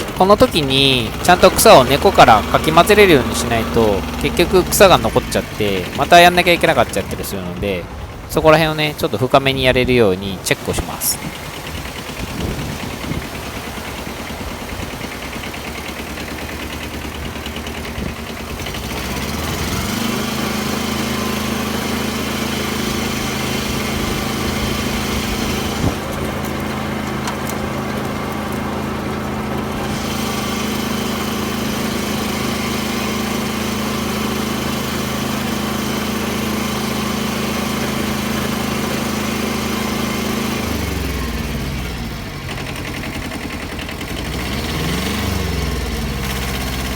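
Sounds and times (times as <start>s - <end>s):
tractor engine running: 0.0s - 46.9s.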